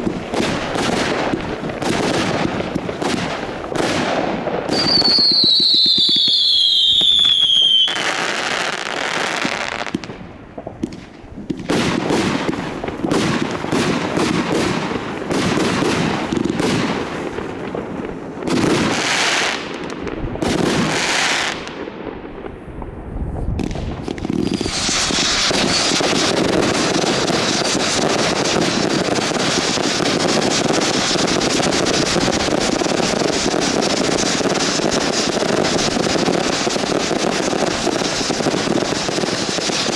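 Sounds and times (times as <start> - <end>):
dense crackle of fireworks: 0.0 - 39.9
firework bangs and bursts: 0.0 - 39.9
firework whistle falling in pitch: 4.7 - 8.4, 24.5 - 26.3.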